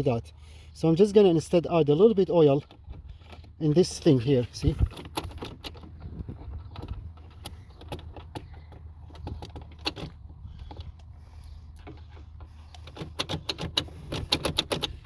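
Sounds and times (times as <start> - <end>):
steady low hum: 0.0 - 15.0
door handle clicks and rattles: 4.7 - 11.0, 11.8 - 15.0.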